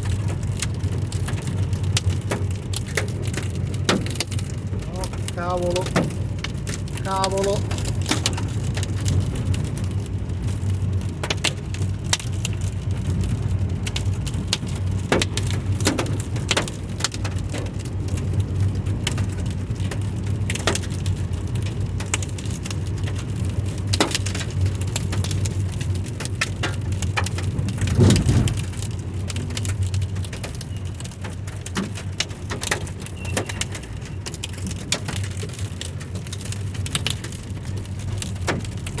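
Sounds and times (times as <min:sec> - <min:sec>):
low rumble: 0:27.5 - 0:30.2.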